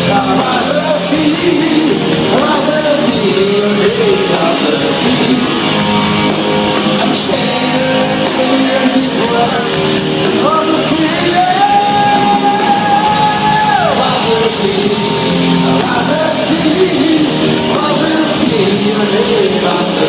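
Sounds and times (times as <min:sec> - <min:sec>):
person shouting singing: 0:00.0 - 0:05.8, 0:10.4 - 0:20.0
live rock band playing: 0:00.0 - 0:20.0.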